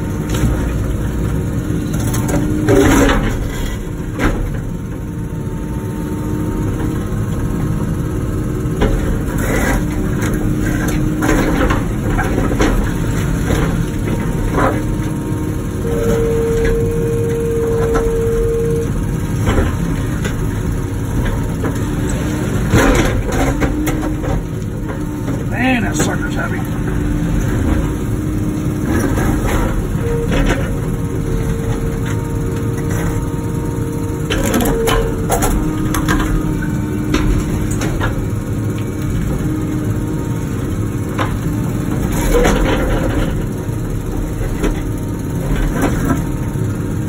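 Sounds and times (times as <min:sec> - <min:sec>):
excavator diesel engine running: 0:00.0 - 0:47.0
steady whine: 0:06.3 - 0:41.4.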